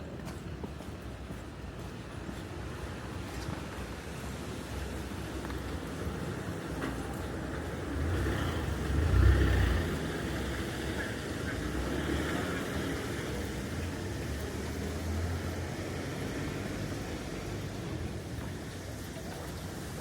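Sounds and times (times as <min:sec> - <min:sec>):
vehicle engine rumbling: 0:05.8 - 0:19.7.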